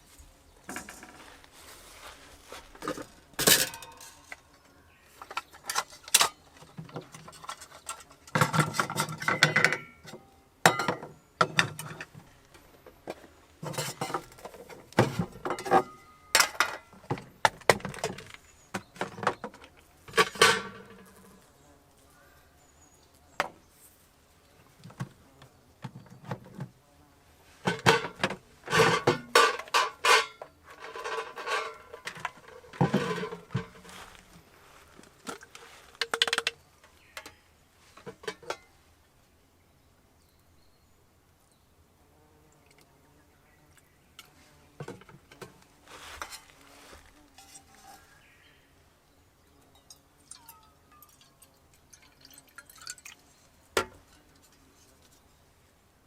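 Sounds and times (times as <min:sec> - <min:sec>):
cookware and utensils clattering: 0:00.7 - 0:01.3, 0:02.8 - 0:04.6, 0:05.2 - 0:12.2, 0:13.6 - 0:21.4, 0:27.5 - 0:34.2, 0:38.0 - 0:38.7, 0:47.4 - 0:48.1, 0:49.5 - 0:55.2.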